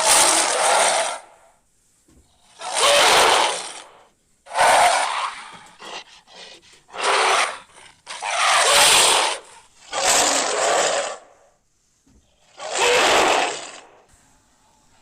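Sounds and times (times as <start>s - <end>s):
raspy dragon roars: 0.0s - 1.3s, 2.6s - 3.9s, 6.9s - 11.3s, 12.6s - 13.9s.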